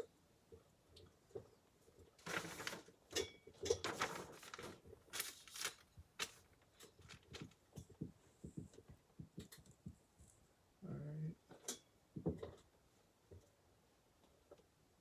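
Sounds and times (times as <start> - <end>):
parts rummaged through rustling: 2.1 - 8.0.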